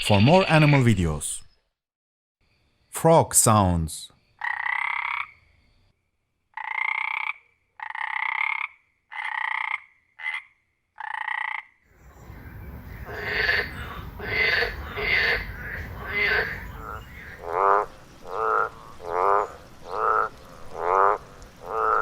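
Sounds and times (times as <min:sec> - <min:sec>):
frogs croaking: 0:00.0 - 0:01.2, 0:04.2 - 0:22.0
steady background hiss: 0:11.9 - 0:22.0.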